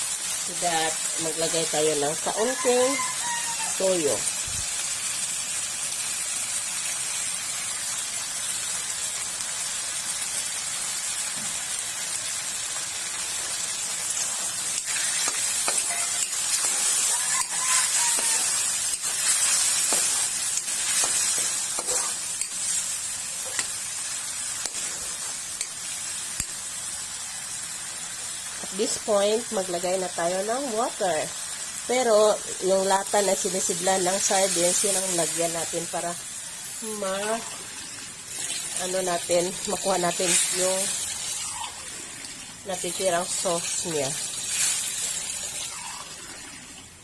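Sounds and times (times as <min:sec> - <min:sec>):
food sizzling in a pan: 0:00.0 - 0:47.0
spatula scraping a pan: 0:14.2 - 0:23.8.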